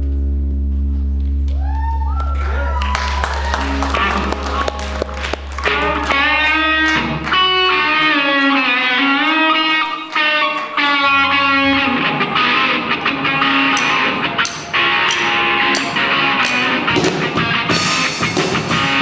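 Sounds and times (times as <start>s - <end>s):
electric guitar melody: 0.0s - 1.6s, 2.4s - 19.0s
strong bass: 0.0s - 8.3s, 15.0s - 19.0s.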